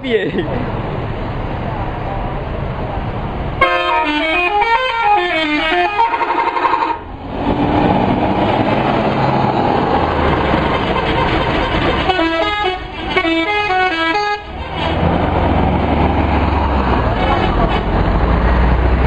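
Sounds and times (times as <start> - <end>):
bus musical horn melody: 3.6 - 7.1, 10.9 - 15.0.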